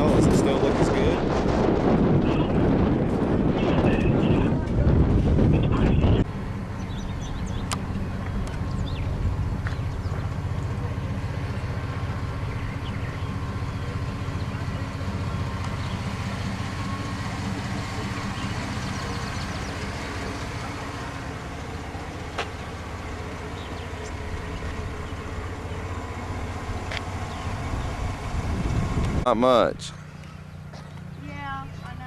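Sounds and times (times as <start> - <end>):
engine idling: 0.0 - 32.0.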